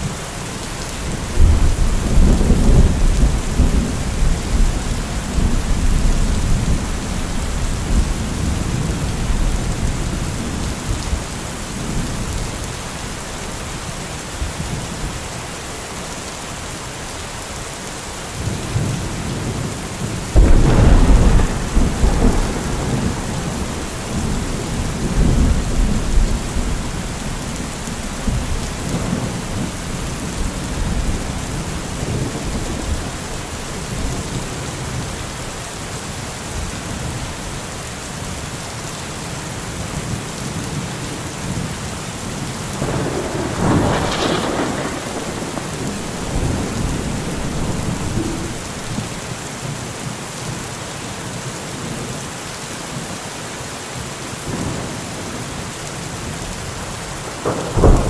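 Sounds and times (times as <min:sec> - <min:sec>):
steady rain: 0:00.0 - 0:58.0
thunder rumbling: 0:01.0 - 0:12.7, 0:18.7 - 0:35.2, 0:42.8 - 0:49.4, 0:57.3 - 0:58.0
sharp thunderclap: 0:20.3 - 0:33.1, 0:42.8 - 0:49.2, 0:57.4 - 0:58.0.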